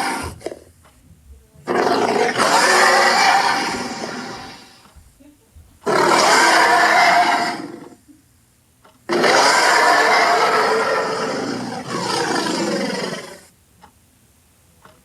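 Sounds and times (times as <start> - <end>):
bear roaring: 0.0 - 0.4, 1.7 - 4.8, 5.8 - 8.0, 9.1 - 13.5.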